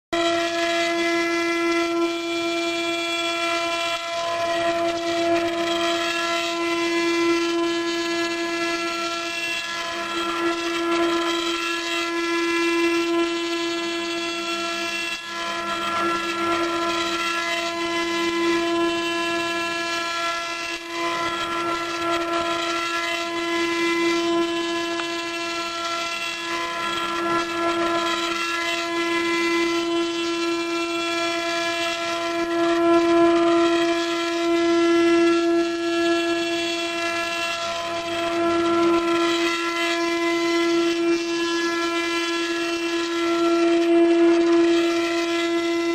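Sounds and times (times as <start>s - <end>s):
cnc router spindle whine: 0.0s - 45.9s
rushing cutting noise: 0.2s - 45.9s.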